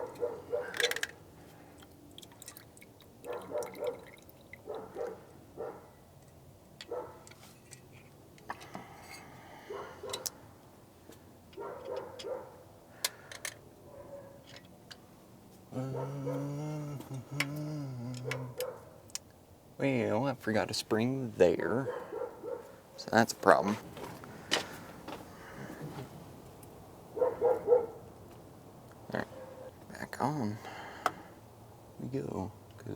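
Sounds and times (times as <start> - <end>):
clicks and taps of metal parts: 0.1 - 1.2, 13.0 - 13.6.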